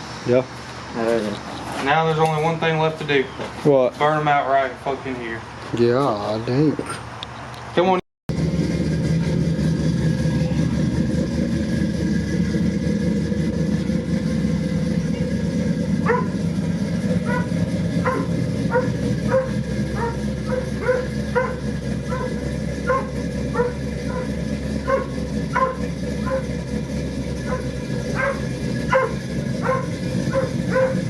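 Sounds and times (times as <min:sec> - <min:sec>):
low engine rumble: 0:00.0 - 0:31.0
dog barking: 0:16.0 - 0:16.4, 0:17.2 - 0:26.6, 0:27.4 - 0:31.0.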